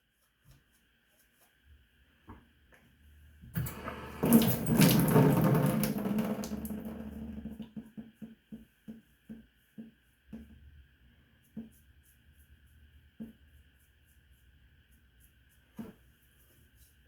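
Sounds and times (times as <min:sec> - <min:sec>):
tap water running into sink: 0:03.6 - 0:07.8.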